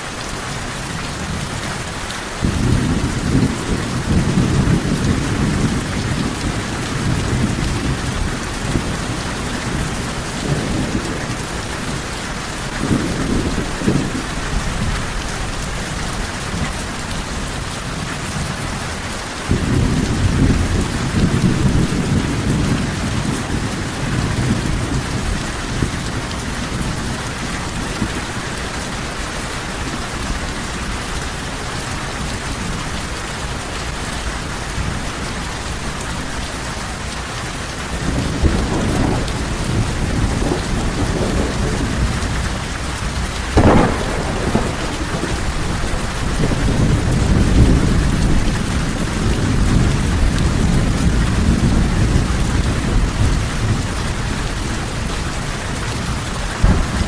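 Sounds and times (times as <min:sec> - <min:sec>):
steady rain: 0:00.0 - 0:57.0
rolling thunder: 0:02.4 - 0:18.5, 0:19.5 - 0:28.8, 0:37.9 - 0:57.0.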